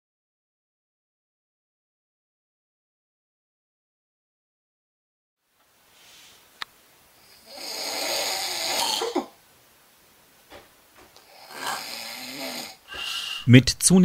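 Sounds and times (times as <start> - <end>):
person snoring: 7.2 - 9.3, 11.2 - 13.6.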